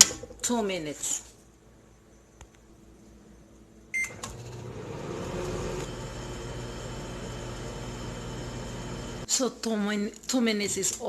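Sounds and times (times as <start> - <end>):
microwave beep: 3.9 - 9.2
microwave oven humming: 4.0 - 9.3.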